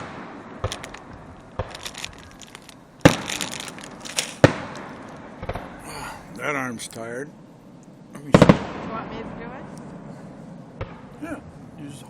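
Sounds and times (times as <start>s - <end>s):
fireworks crackling: 0.0s - 5.7s
fireworks booming: 0.0s - 5.9s, 8.3s - 10.1s.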